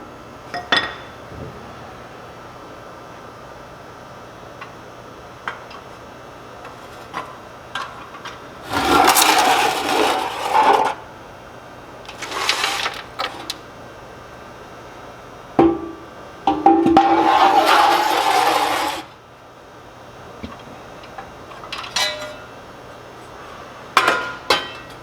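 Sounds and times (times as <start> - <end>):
metal scraping in a stove: 8.6 - 11.0, 12.1 - 13.6, 16.5 - 19.1, 21.8 - 22.5.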